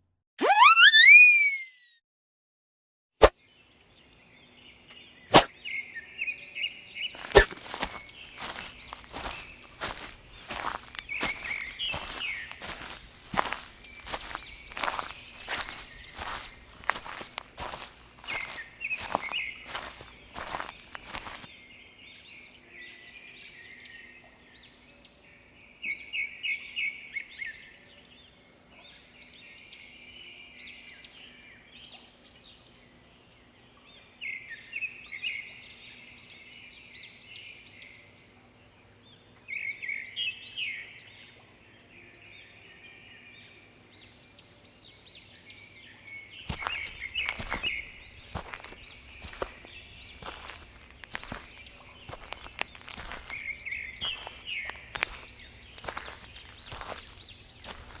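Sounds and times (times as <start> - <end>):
small birds chirping: 3.4 - 22.4, 42.5 - 58.0.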